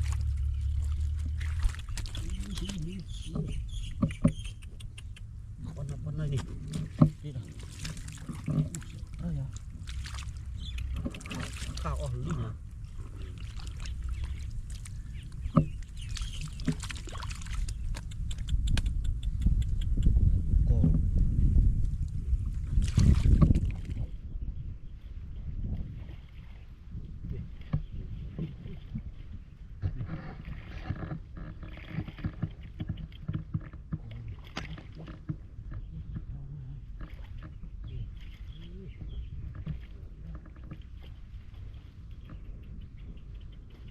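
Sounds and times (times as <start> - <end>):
water splashing and sloshing: 0.0 - 20.0, 20.7 - 43.9
wind rumble on microphone: 0.0 - 43.9
sharp clicks: 4.0 - 5.3, 17.6 - 20.1.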